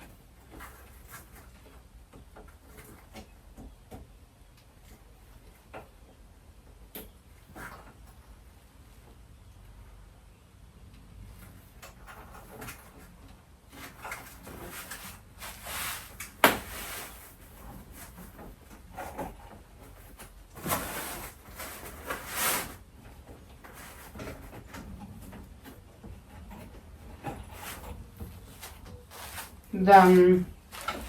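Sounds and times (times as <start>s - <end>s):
plastic parts clicking and rustling: 11.7s - 31.0s.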